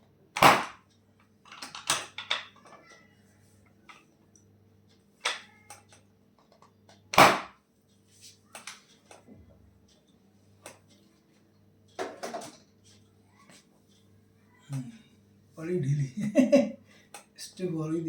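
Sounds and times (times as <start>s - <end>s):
electrical hum: 9.2s - 18.0s.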